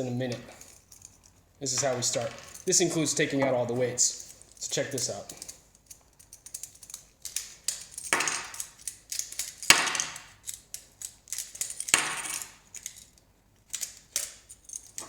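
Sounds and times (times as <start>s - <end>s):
metal bearings clattering on hard surface: 0.0s - 15.0s.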